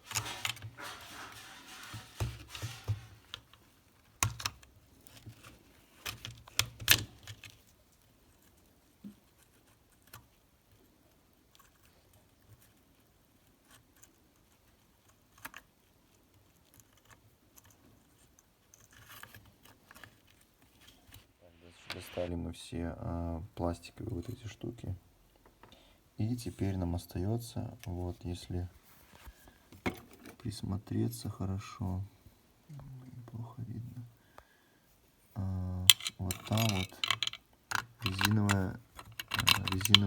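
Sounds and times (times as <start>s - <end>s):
plastic pieces clicking and rattling: 35.9s - 40.0s.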